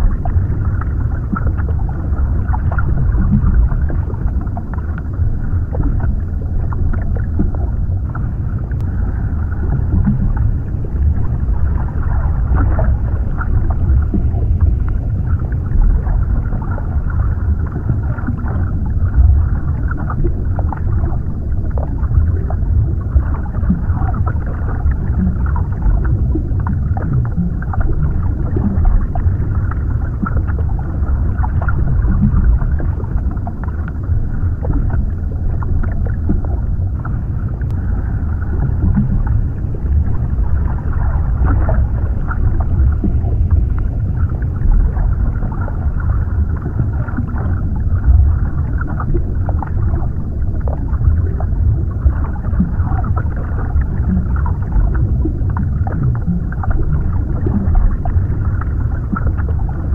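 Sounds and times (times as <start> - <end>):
muffled underwater rumble: 0.0 - 59.9.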